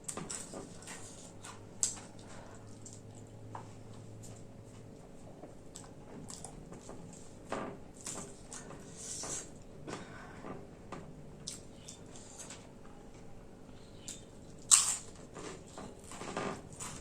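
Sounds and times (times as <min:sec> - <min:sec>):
chewing and wet mouth noises: 0:05.7 - 0:07.3, 0:11.4 - 0:12.6.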